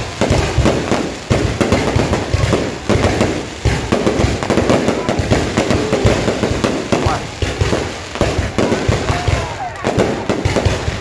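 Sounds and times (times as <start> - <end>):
fireworks bangs and crackles: 0.0 - 11.0.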